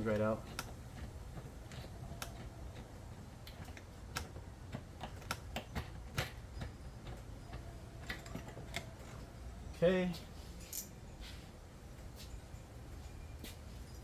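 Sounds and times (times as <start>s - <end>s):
car parts clicking and tapping: 0.0s - 9.4s.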